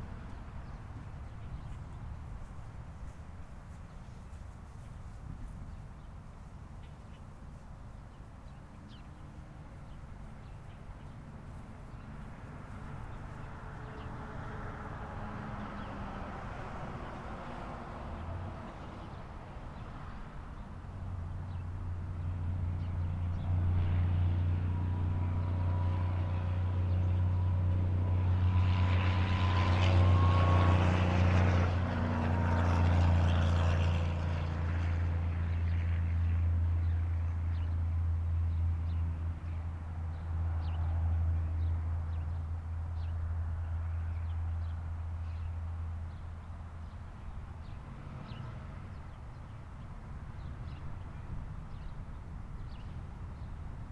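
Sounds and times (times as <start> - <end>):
engine drone passing: 11.9 - 53.8.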